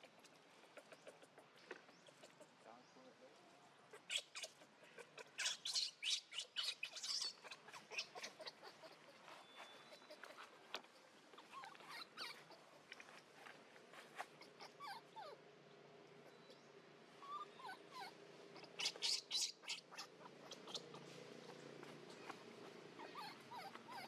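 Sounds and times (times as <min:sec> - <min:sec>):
monkey whimpering calls: 0:00.0 - 0:02.6, 0:03.9 - 0:13.0, 0:14.3 - 0:15.4, 0:17.2 - 0:22.4, 0:23.0 - 0:24.0
monkey squeaks: 0:04.0 - 0:04.6, 0:05.2 - 0:10.8, 0:11.4 - 0:12.6, 0:17.2 - 0:21.0, 0:23.0 - 0:24.0.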